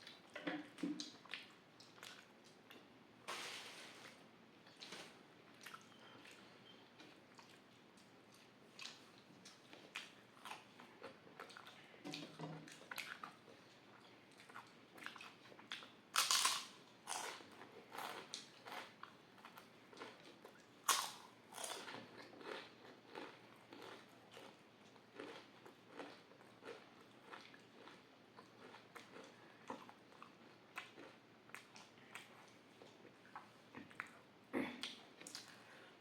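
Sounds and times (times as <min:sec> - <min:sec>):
chewing food: 0:05.5 - 0:34.2
loud crunchy bites: 0:16.2 - 0:17.3, 0:20.9 - 0:21.8.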